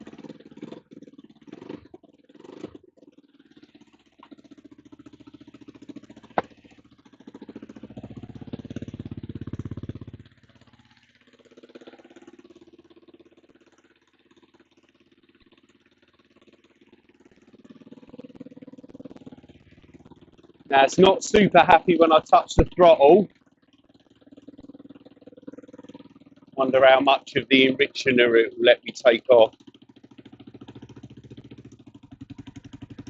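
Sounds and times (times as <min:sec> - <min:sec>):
motorcycle engine idling: 0:00.0 - 0:33.0.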